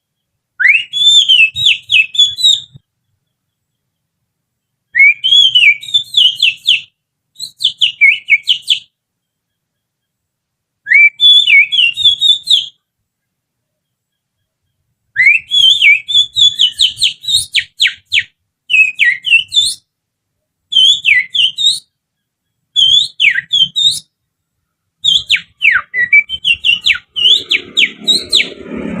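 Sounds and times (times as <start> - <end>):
finger whistling birdsong: 0.6 - 2.9, 4.9 - 9.0, 10.8 - 12.8, 15.2 - 19.9, 20.7 - 22.0, 22.8 - 24.2, 25.0 - 28.6
rumbling noise: 27.1 - 29.0.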